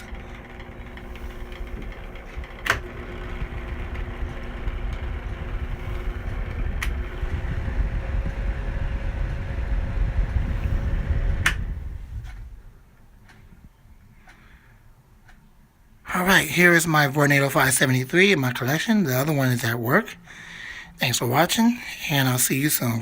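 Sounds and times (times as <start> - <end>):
box fan humming: 0.0 - 23.0
sharp clicks: 11.3 - 12.5.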